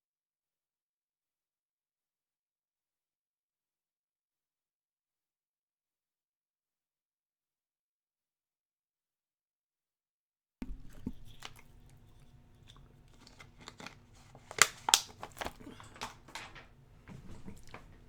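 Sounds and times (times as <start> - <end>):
packaging crinkling and tearing: 10.6 - 18.0
sharp clicks and snaps: 10.6 - 18.0.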